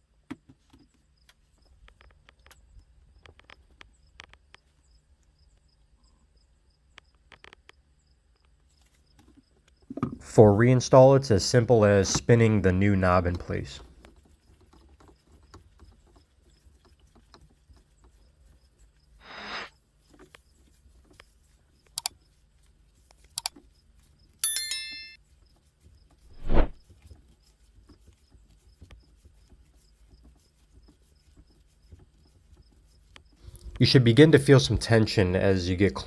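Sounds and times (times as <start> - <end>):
ringing metal clink: 24.4 - 25.2
short rustle: 26.3 - 26.8.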